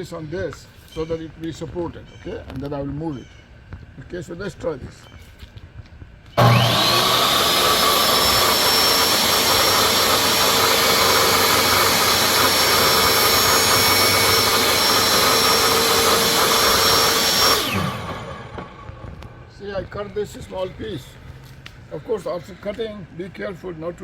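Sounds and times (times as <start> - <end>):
saw cutting wood: 6.4 - 19.5
table saw whining: 6.4 - 19.6.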